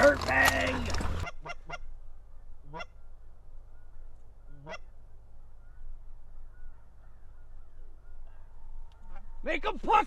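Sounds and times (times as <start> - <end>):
geese honking: 0.0 - 1.9, 2.6 - 3.0, 4.5 - 5.0.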